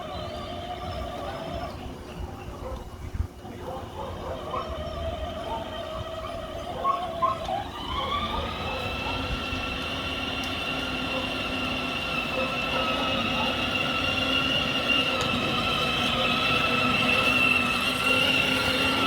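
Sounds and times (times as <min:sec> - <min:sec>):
toy car electric motor whining: 0:00.0 - 0:03.0, 0:04.1 - 0:19.0.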